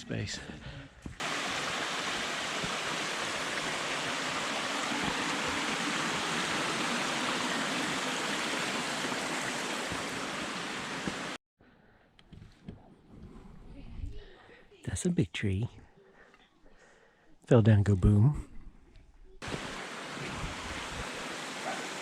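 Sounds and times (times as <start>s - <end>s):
mountain stream rushing: 1.2s - 11.4s, 19.4s - 22.0s.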